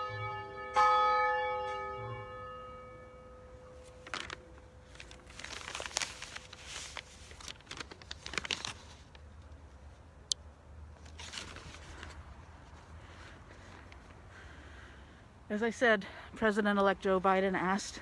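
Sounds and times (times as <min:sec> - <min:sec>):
church bell hum: 0:00.0 - 0:04.0
crinkling rustling handling noise: 0:03.6 - 0:10.1, 0:10.9 - 0:14.4.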